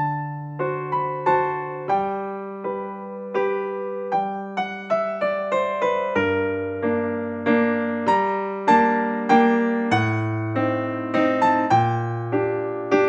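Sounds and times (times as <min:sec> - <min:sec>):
gentle piano music: 0:00.0 - 0:13.0.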